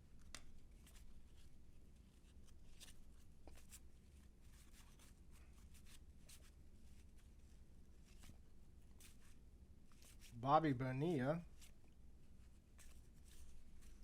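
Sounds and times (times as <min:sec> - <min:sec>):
cardboard cards flicking: 0:00.2 - 0:01.1.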